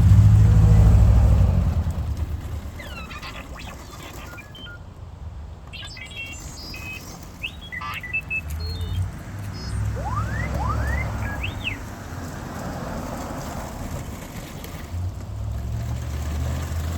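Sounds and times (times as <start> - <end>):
low hum of drive motors: 0.0 - 16.9
robot beeps and whistles: 2.8 - 4.8, 5.7 - 11.9.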